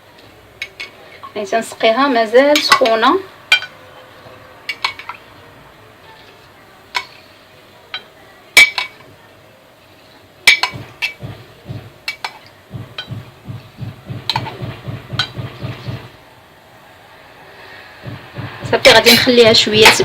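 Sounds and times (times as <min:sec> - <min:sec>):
spoon clinking against a pan: 0:00.6 - 0:01.8, 0:02.5 - 0:03.8, 0:04.7 - 0:05.3, 0:07.9 - 0:09.1, 0:10.4 - 0:11.2.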